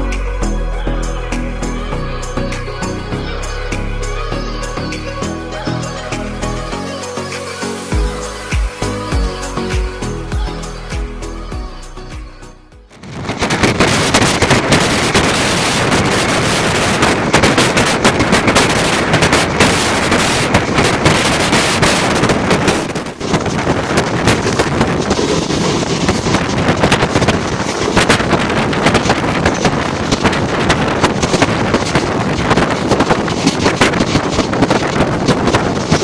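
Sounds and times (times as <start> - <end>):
dense crackling: 12.9 - 36.0
train running noise: 12.9 - 36.0
wind buffeting microphone: 12.9 - 36.0.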